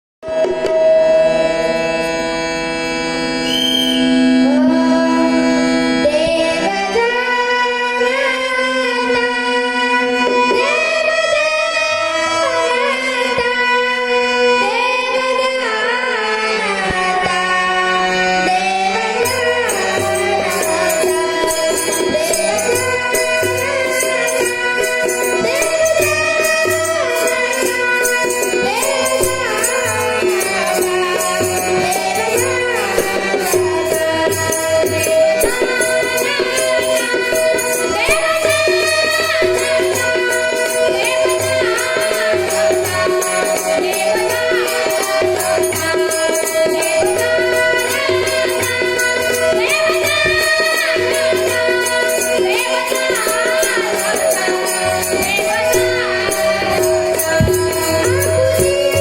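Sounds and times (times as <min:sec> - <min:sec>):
harmonium held notes: 0:00.2 - 0:59.0
boy singing: 0:04.0 - 0:59.0
jingling percussion: 0:18.9 - 0:59.0.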